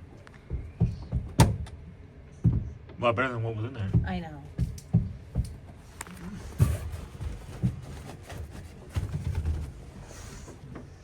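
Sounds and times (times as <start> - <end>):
rustling handling noise: 5.8 - 10.6.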